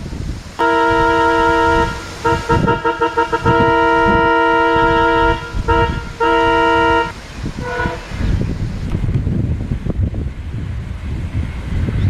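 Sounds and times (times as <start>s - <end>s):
low rumbling: 0.0s - 12.0s
train horn blasts: 0.6s - 8.2s.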